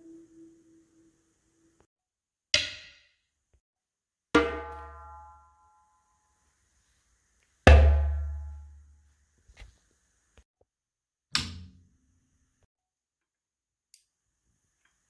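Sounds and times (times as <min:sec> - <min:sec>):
strikes on resonant household objects: 0:04.4 - 0:05.8, 0:07.7 - 0:08.9.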